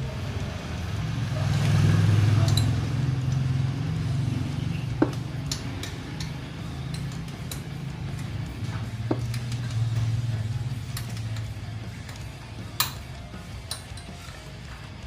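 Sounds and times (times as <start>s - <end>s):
engine idling: 0.0s - 15.0s
light metallic clinks: 2.4s - 3.5s, 5.0s - 8.4s, 10.8s - 14.4s.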